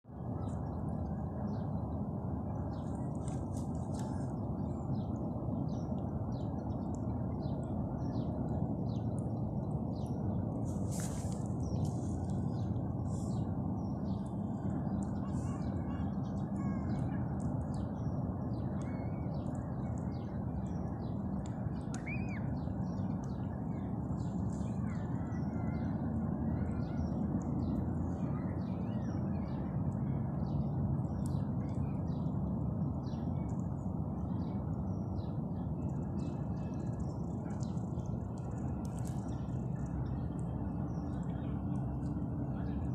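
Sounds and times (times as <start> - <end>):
high bird chirps and calls: 22.0 - 22.4.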